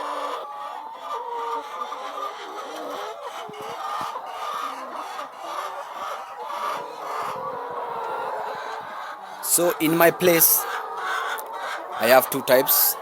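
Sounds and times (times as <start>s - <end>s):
hens clucking: 0.0s - 13.0s.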